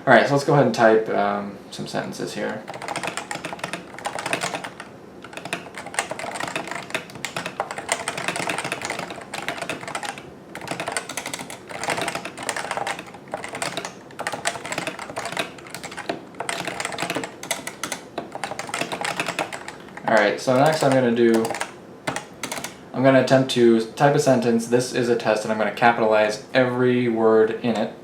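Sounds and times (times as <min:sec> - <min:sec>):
fast keyboard typing: 0:02.4 - 0:22.8.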